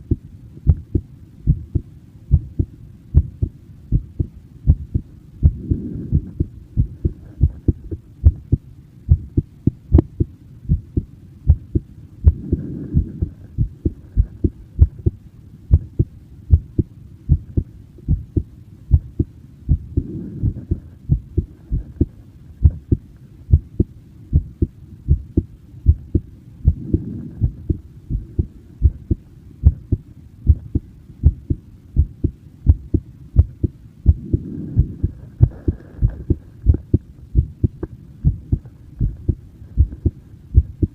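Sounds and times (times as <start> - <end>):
heartbeat thumps: 0.0 - 40.9.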